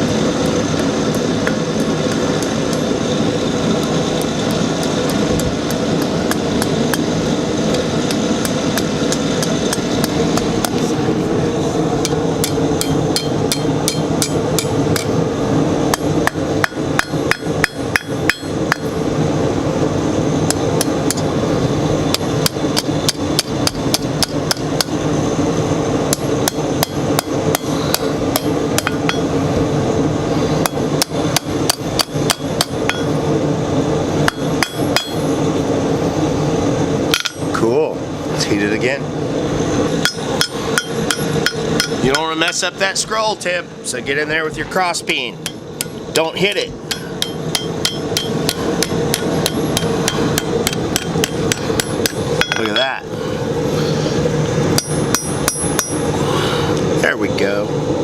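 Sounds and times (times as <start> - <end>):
steady hum: 0.0 - 58.0
hammer striking steel on anvil: 3.8 - 7.1, 7.7 - 10.8, 12.0 - 15.2, 15.9 - 19.0, 20.5 - 21.3, 22.1 - 25.0, 26.1 - 29.3, 30.6 - 33.2, 34.2 - 35.3, 37.1 - 37.5, 40.0 - 42.7, 45.4 - 53.0, 54.8 - 56.1.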